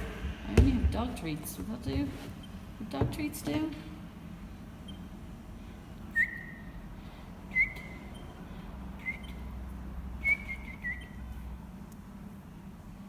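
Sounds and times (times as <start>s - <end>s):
small songbird whistling call: 6.2s - 6.8s, 7.5s - 8.3s, 9.0s - 9.4s, 10.2s - 11.2s.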